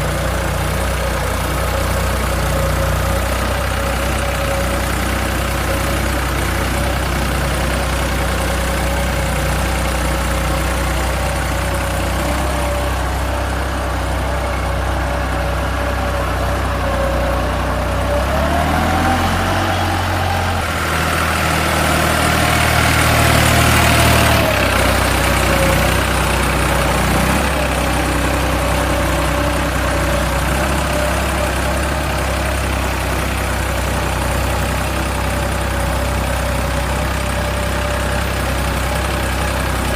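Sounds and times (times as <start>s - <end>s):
machine engine running: 0.0s - 39.9s
rising whine: 12.8s - 33.8s.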